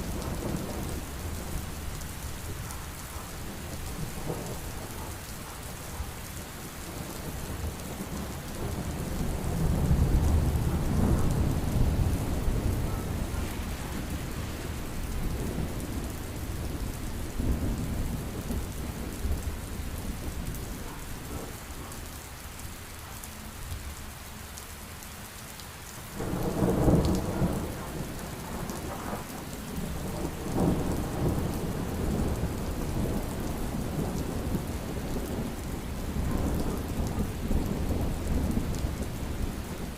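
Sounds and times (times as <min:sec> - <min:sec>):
heavy rain: 0:00.0 - 0:39.9
rolling thunder: 0:06.9 - 0:21.6, 0:26.2 - 0:39.9.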